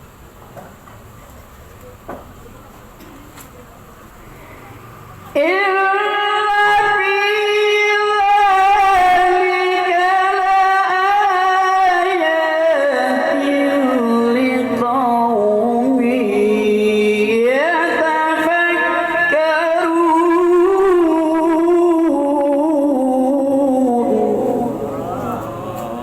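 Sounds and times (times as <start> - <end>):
man reciting melismatic chant: 5.5 - 26.0.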